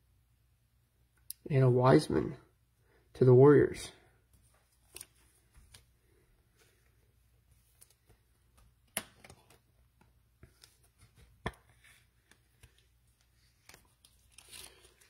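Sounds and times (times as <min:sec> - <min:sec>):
trading cards clicking and rustling: 0:07.6 - 0:15.0
cards tapping down: 0:07.8 - 0:12.9.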